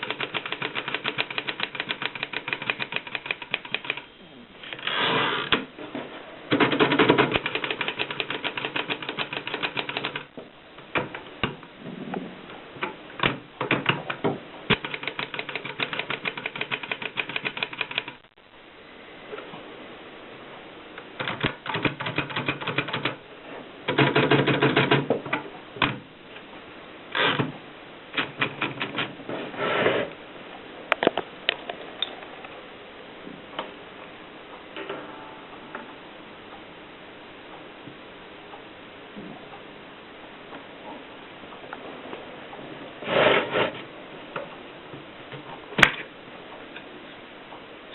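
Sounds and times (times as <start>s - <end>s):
typewriter key strikes: 0.0s - 4.0s, 14.7s - 18.2s
typewriter mechanical rasp: 0.0s - 4.1s, 6.5s - 10.3s, 13.2s - 18.2s, 21.2s - 23.2s, 23.9s - 25.1s, 27.1s - 27.5s, 28.2s - 29.2s.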